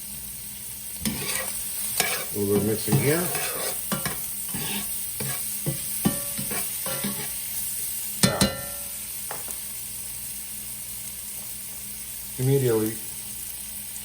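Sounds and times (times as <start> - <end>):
food sizzling in oil: 0.0 - 14.0
utensil scraping and clanking pan: 1.0 - 7.5, 8.2 - 9.5.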